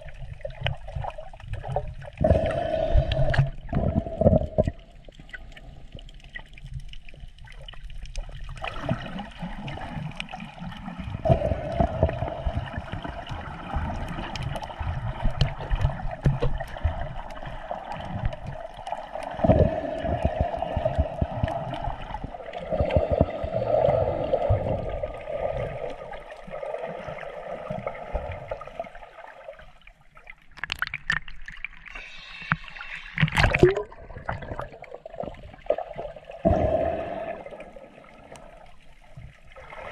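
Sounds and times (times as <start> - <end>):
water gurgling and sloshing: 0.0 - 39.9
knocks and splashes: 11.8 - 18.6, 33.2 - 35.5.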